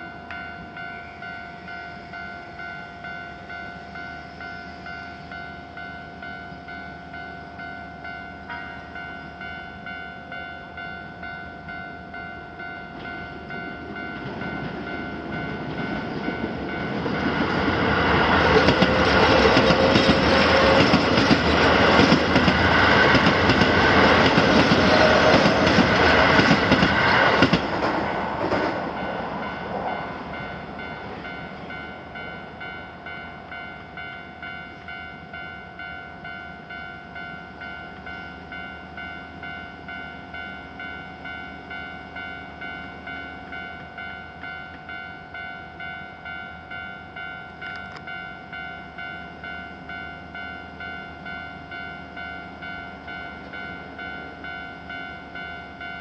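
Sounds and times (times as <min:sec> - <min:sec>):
crossing warning bell ringing: 0:00.0 - 0:56.0
train passing: 0:00.0 - 0:56.0.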